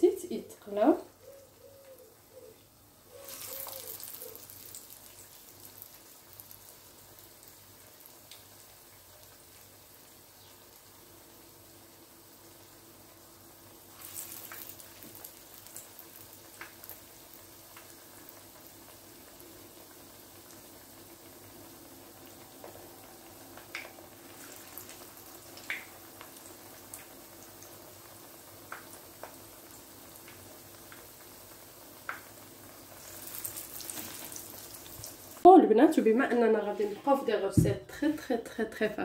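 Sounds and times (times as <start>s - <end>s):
food deep-frying in oil: 0.0s - 37.7s
oil popping and crackling: 3.1s - 11.1s, 13.6s - 35.5s.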